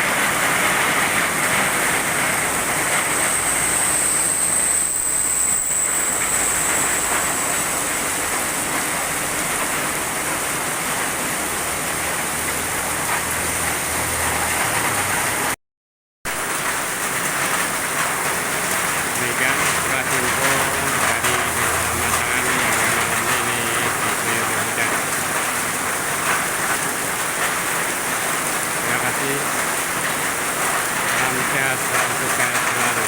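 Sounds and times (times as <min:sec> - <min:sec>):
heavy rain pouring: 0:00.0 - 0:15.6, 0:16.3 - 0:33.0.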